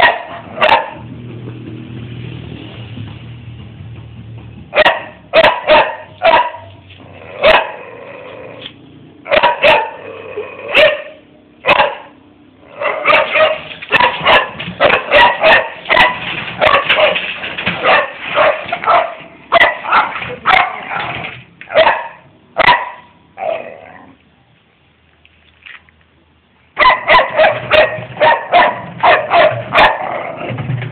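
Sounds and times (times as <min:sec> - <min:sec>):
dog barking: 0:00.0 - 0:01.0, 0:04.7 - 0:06.8, 0:07.4 - 0:07.9, 0:09.3 - 0:10.1, 0:10.7 - 0:17.2, 0:17.8 - 0:21.1, 0:21.7 - 0:23.6, 0:26.8 - 0:30.4.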